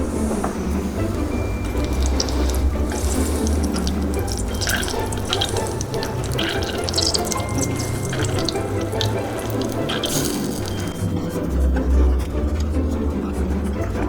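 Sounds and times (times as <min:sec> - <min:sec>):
tap water running into sink: 0:01.1 - 0:11.0.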